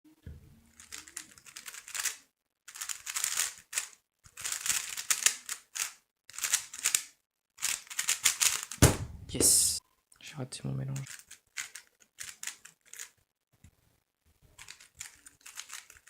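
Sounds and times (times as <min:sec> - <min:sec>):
plastic cube clicking: 0:00.8 - 0:08.8, 0:11.0 - 0:13.2, 0:14.6 - 0:16.0.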